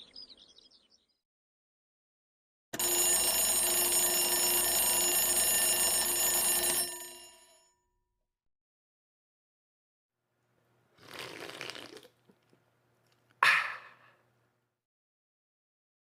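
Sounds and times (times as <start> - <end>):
bell ringing loudly: 2.8 - 7.7.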